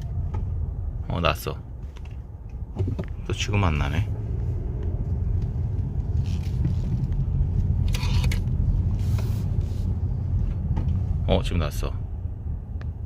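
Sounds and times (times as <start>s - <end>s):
car road and engine rumble: 0.0s - 13.0s.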